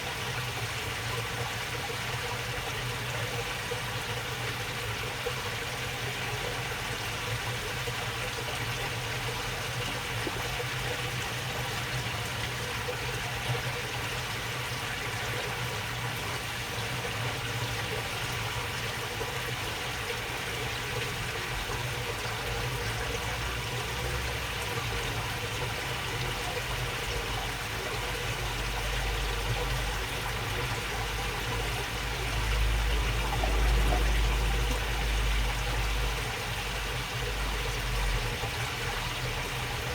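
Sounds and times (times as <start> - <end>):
shallow water babbling: 0.0 - 39.9.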